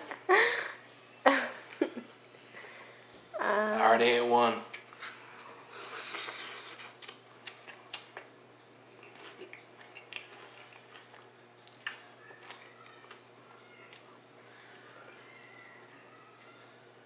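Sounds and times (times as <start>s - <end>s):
person chewing crunchy chips: 4.8s - 16.5s.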